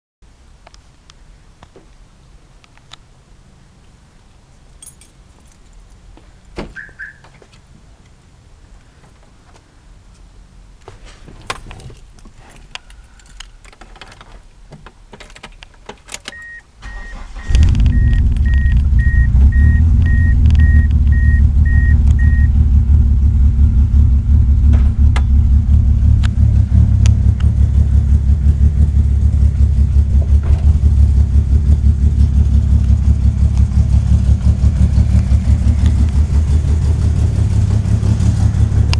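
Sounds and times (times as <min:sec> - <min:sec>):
dashboard warning chime beeping: 0:16.3 - 0:22.5
car engine idling with knock: 0:17.7 - 0:38.9.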